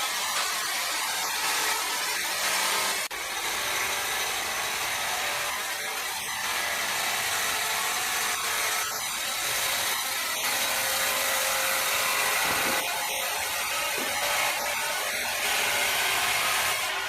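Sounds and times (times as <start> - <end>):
power saw cutting timber: 0.0 - 17.0.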